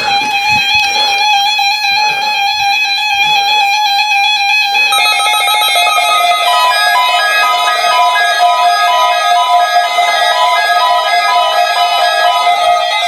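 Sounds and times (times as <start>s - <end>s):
beeping alarm tone: 4.9s - 13.0s
steady electronic tone: 4.9s - 13.0s.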